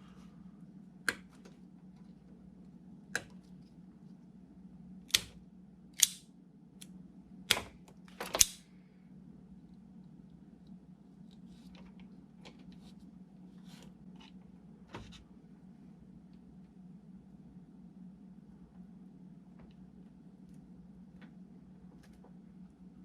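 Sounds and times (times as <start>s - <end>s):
faint steady hum: 0.0s - 23.0s
hand tool snipping wire: 6.0s - 6.2s.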